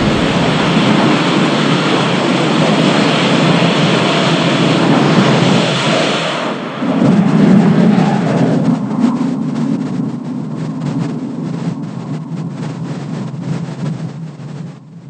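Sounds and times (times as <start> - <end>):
rough mechanical noise: 0.0 - 1.3.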